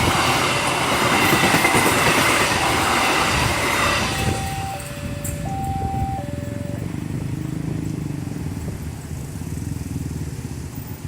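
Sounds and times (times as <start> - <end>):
two-tone warning siren: 0.0 - 7.6
road traffic rumble: 0.0 - 11.0.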